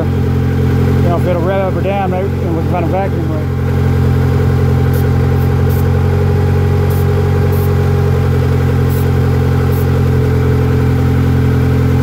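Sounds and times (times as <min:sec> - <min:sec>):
car engine idling high: 0:00.0 - 0:12.0
exhaust leak: 0:00.1 - 0:12.0
spray can hissing: 0:04.9 - 0:06.0, 0:06.8 - 0:07.8, 0:08.8 - 0:10.0.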